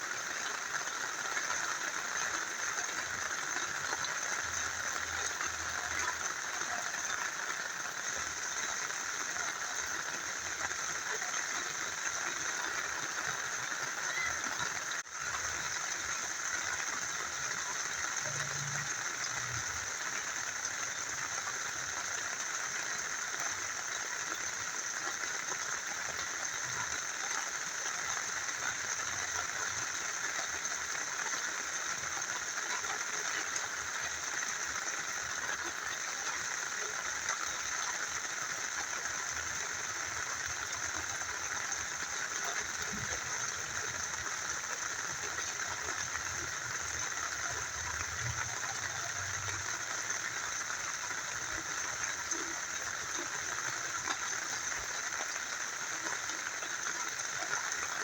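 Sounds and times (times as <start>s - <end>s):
rain falling: 0.0s - 58.0s
small river flowing: 0.0s - 58.0s.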